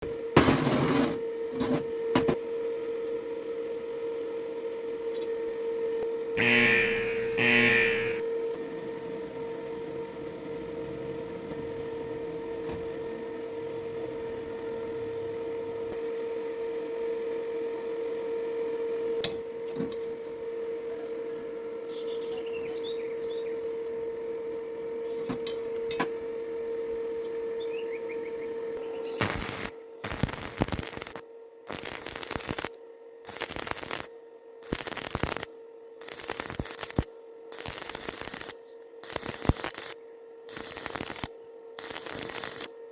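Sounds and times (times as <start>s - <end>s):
steady hum: 6.4s - 8.3s, 22.8s - 42.9s.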